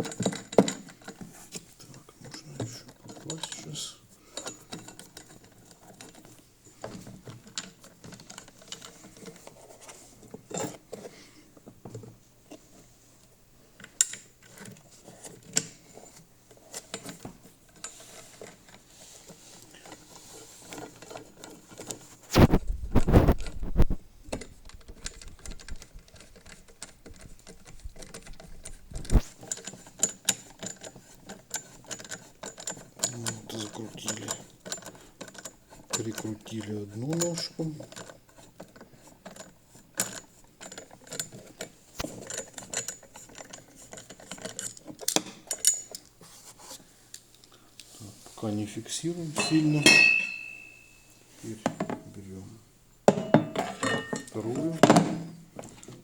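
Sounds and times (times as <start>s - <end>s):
metal parts rattling: 49.4s - 51.1s, 53.5s - 54.8s.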